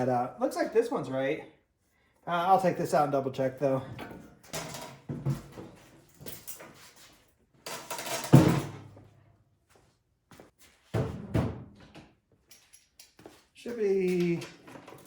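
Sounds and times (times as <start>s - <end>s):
metal tools clunking and rattling: 3.8s - 7.0s, 7.6s - 9.0s, 14.2s - 15.0s
metal clatter: 7.7s - 9.0s.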